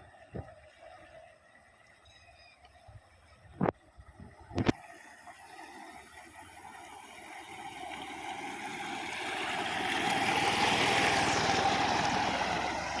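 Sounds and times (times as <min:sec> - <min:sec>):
engine approaching: 0:07.2 - 0:13.0.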